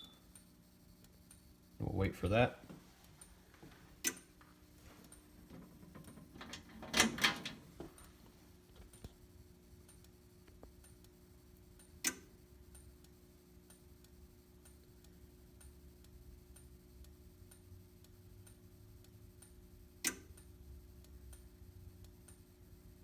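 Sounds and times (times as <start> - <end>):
steady low hum: 0.0 - 23.0
fire alarm panel clicks: 5.5 - 8.0.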